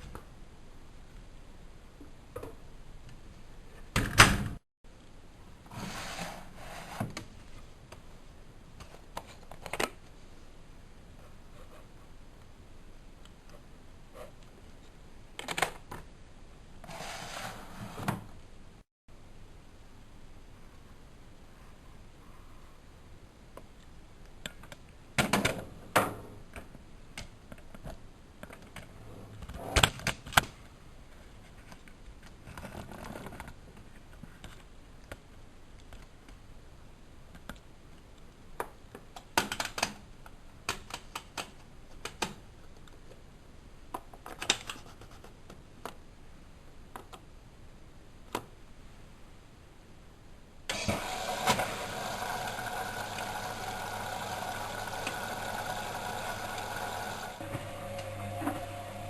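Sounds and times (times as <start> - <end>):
washing machine humming: 50.7 - 59.0.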